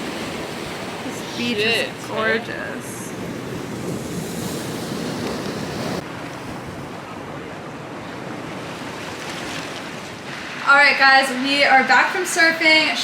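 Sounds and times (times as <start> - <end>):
ocean surf washing: 0.0 - 13.0
wind buffeting microphone: 0.0 - 13.0.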